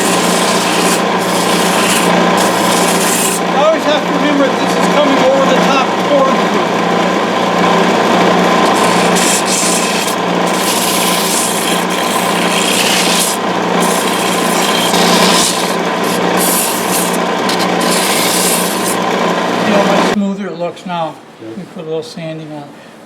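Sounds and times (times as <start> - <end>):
sandpaper rubbing spinning wood: 0.0 - 5.9, 7.7 - 20.2
lathe motor hum: 0.0 - 20.2.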